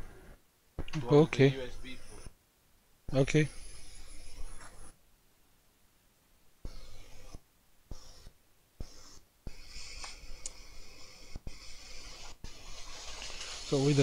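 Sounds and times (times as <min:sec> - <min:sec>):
faint scratching and rubbing: 0:01.0 - 0:02.4, 0:03.1 - 0:05.0, 0:06.6 - 0:14.0.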